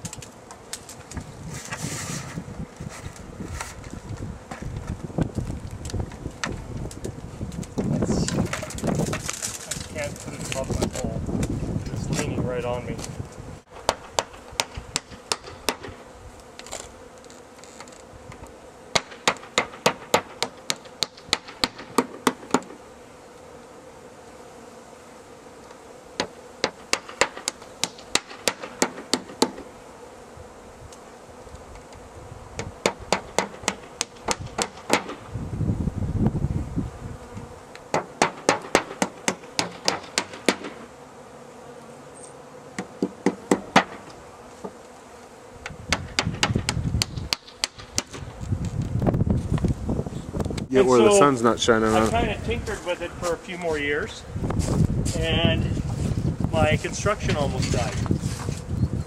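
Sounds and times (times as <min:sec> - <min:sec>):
honeybees buzzing: 0:00.0 - 0:59.0
sharp knocks: 0:37.9 - 0:40.8, 0:42.8 - 0:44.1.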